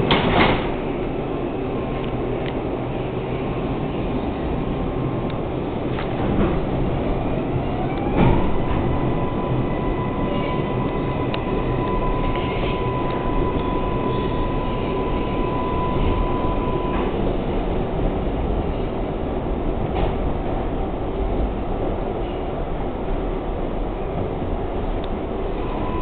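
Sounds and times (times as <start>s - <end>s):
subway train rumble and rail noise: 0.0s - 26.0s
high tone gliding up: 7.7s - 17.2s.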